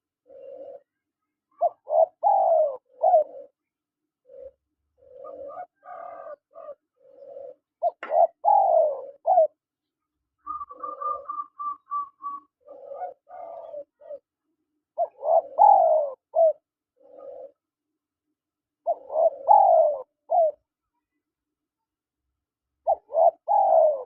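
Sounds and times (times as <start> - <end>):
doves cooing: 0.2 - 3.6, 4.2 - 9.6, 10.4 - 14.3, 15.0 - 17.7, 18.8 - 20.6, 22.8 - 24.0.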